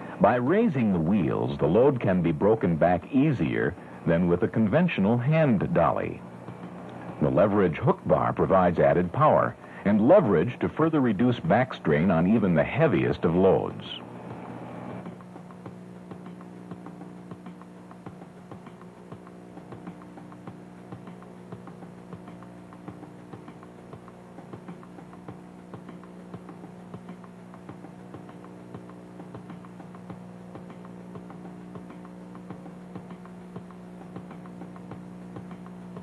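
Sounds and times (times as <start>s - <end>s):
motor hum: 0.0s - 36.0s.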